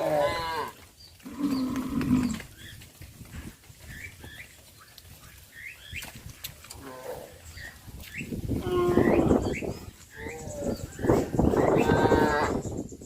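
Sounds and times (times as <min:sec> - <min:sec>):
cattle mooing: 0:00.0 - 0:02.4, 0:08.6 - 0:09.6, 0:10.2 - 0:12.6.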